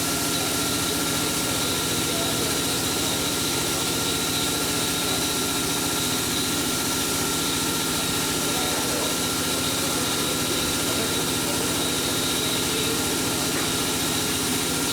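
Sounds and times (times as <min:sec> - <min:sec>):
machine droning with high whine: 0:00.0 - 0:14.9.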